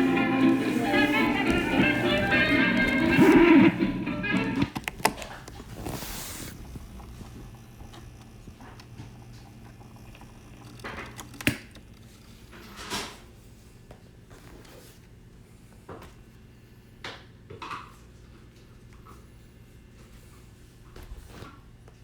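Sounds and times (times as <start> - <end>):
handling clicks and knocks: 0.0 - 6.0.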